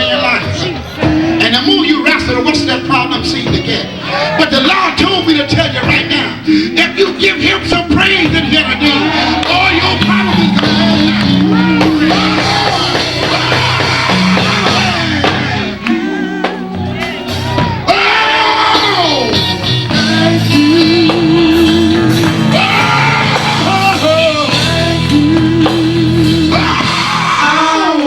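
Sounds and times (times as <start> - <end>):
gospel band playing: 0.0 - 28.0
lead singer shouting and singing: 0.0 - 28.0.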